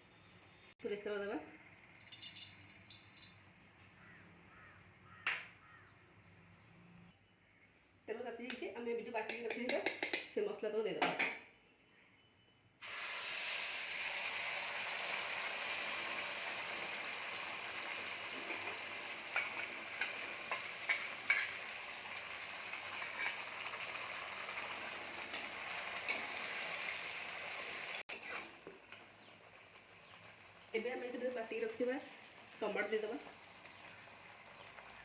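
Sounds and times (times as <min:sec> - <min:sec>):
paste sizzling in hot oil: 0:12.8 - 0:35.0.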